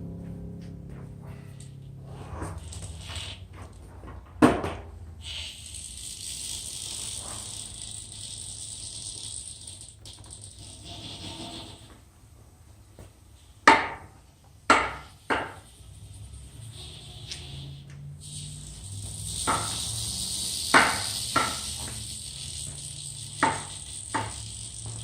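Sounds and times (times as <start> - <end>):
wheel high-pitched hiss: 2.5 - 3.8, 5.2 - 11.9, 15.0 - 25.0.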